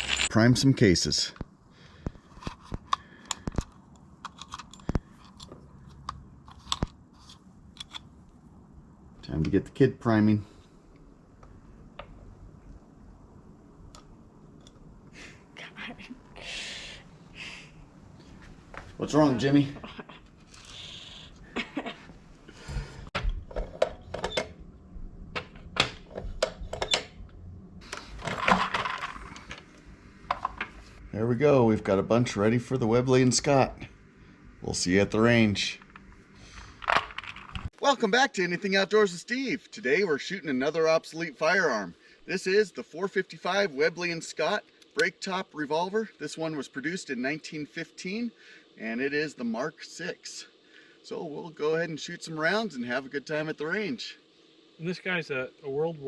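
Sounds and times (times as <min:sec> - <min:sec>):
brass cartridge cases clicking: 0:02.4 - 0:06.9.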